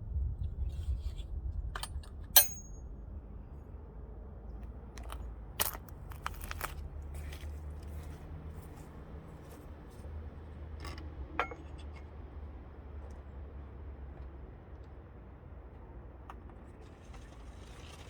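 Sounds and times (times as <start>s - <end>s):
small hard objects clicking: 5.0s - 6.8s.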